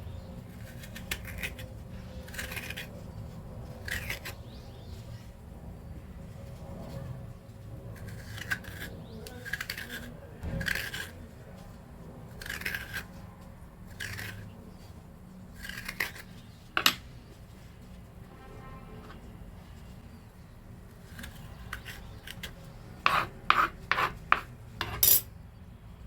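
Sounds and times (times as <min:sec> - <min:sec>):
spoon scraping turnip: 0:02.2 - 0:03.1, 0:08.0 - 0:11.2, 0:12.4 - 0:13.2, 0:13.9 - 0:14.5, 0:15.6 - 0:17.1.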